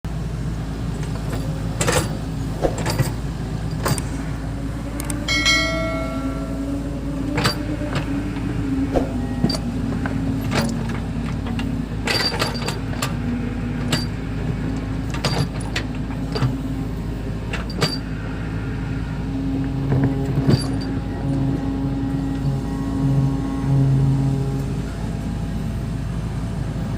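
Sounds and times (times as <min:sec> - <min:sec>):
diesel engine labouring: 0:00.0 - 0:26.9
high pitched tone: 0:05.3 - 0:07.4.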